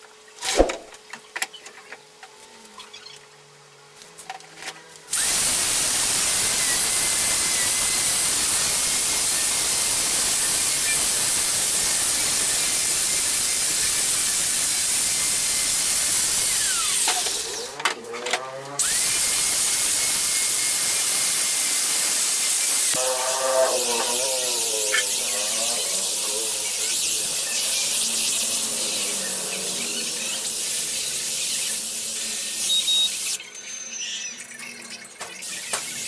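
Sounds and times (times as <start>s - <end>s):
power tool motor whirring: 5.1s - 33.4s.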